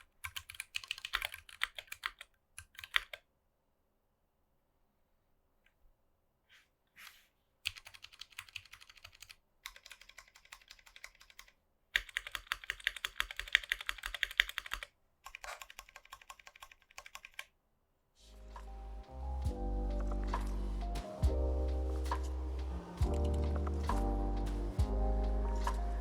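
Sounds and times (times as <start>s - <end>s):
mechanical keyboard typing: 0.0s - 3.2s, 7.7s - 17.5s, 19.5s - 26.0s
music: 18.2s - 26.0s.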